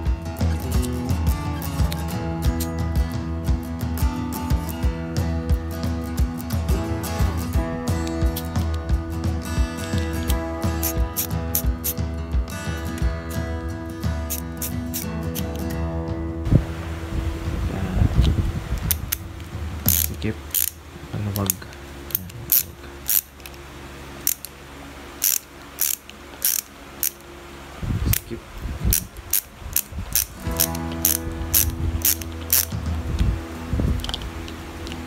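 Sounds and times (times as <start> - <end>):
ratchet screwdriver clicking: 10.2 - 12.0, 14.3 - 15.6, 19.9 - 20.8, 21.4 - 23.6, 24.2 - 24.5, 25.2 - 27.2, 28.9 - 32.7.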